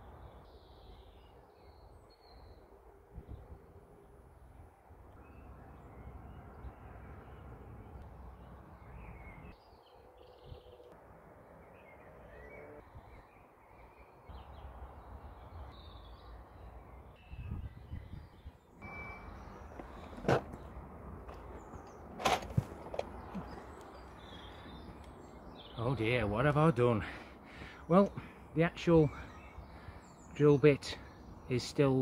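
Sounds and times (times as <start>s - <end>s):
birds calling: 11.6s - 32.0s.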